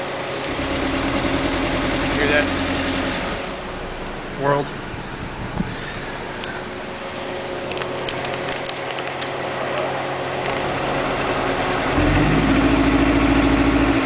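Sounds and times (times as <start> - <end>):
misfiring car engine rumble: 0.0 - 14.0.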